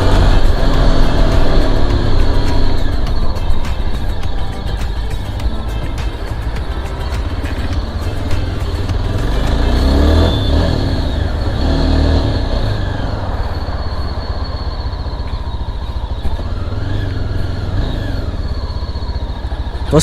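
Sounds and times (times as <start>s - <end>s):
motorcycle engine revving: 0.0s - 20.0s.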